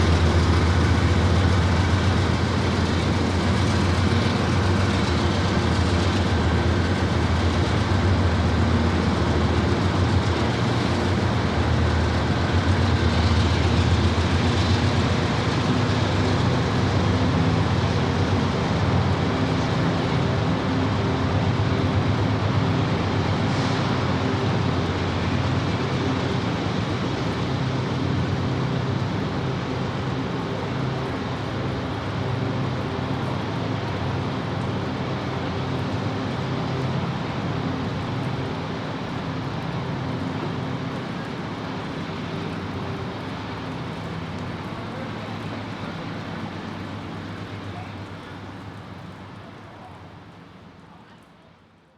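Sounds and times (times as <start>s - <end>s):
diesel locomotive engines humming: 0.0s - 51.0s.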